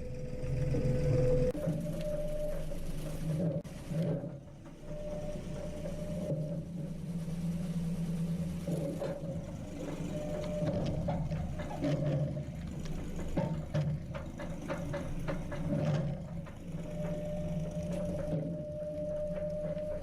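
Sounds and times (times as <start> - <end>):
metallic knocks and clanks: 8.7 - 20.0.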